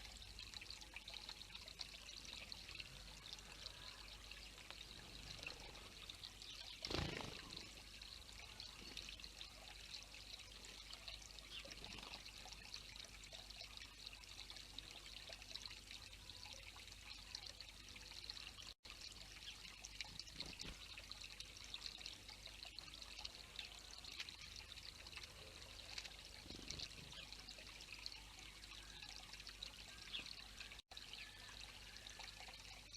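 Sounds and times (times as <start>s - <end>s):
water trickling: 0.0s - 32.9s.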